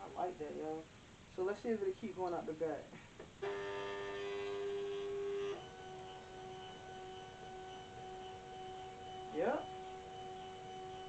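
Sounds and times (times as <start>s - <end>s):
cutter feed motor whining: 3.4s - 11.0s.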